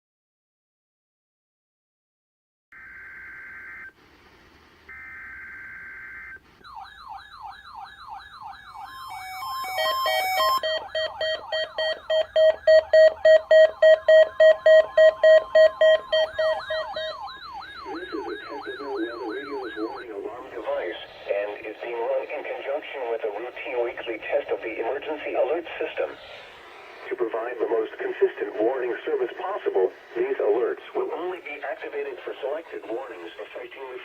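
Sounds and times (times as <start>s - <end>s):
fast warbling siren: 2.8s - 4.0s, 4.9s - 21.1s
steady alarm tone: 4.9s - 33.4s
loud pulsing beeps: 8.8s - 21.1s.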